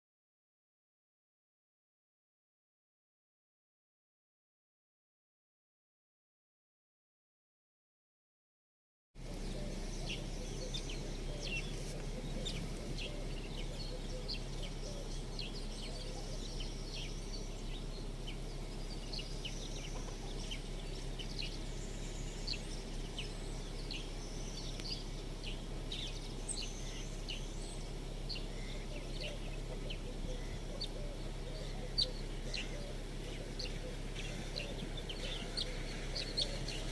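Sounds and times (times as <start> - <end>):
small birds chirping: 9.2 - 36.9
steady low hum: 9.2 - 36.9.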